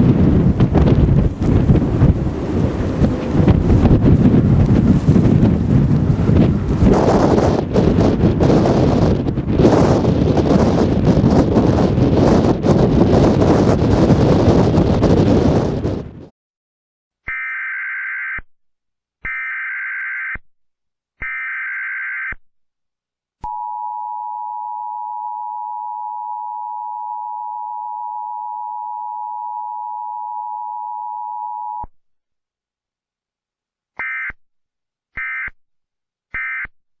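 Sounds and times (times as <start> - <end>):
two-tone attention signal: 23.4 - 31.9.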